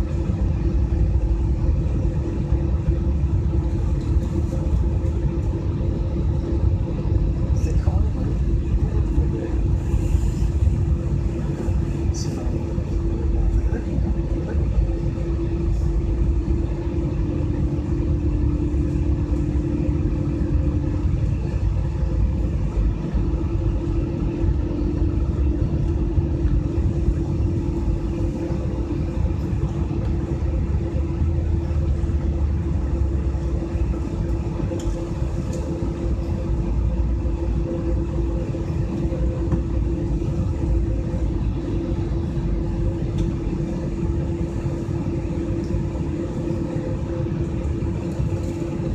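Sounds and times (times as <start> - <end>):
jet engine drone in cabin: 0.0 - 48.9.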